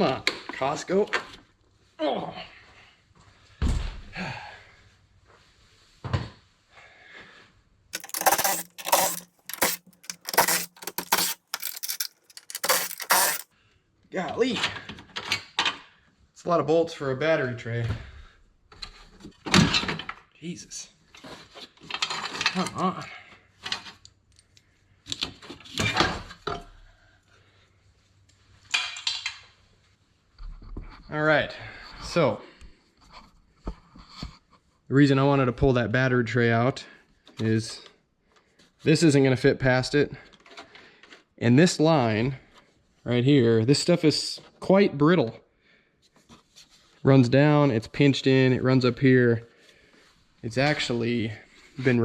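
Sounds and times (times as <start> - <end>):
thump: 3.6 - 4.1
wrench rattling on bolts: 8.0 - 13.4.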